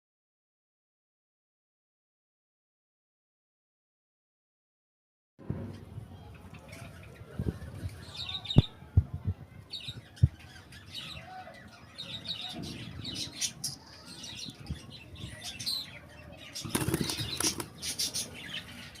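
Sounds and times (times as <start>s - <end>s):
birds flapping wings: 16.6s - 18.0s.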